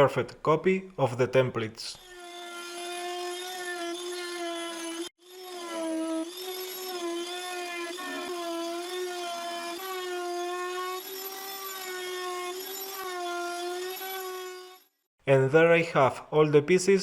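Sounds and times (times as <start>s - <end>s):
router whining cutting wood: 2.0s - 15.0s.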